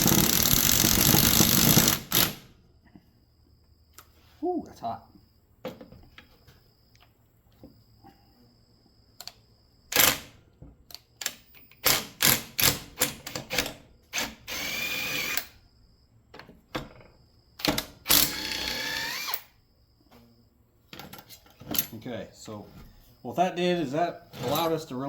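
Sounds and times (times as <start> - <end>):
power drill running: 0.0 - 2.4, 14.1 - 15.5, 18.1 - 19.5.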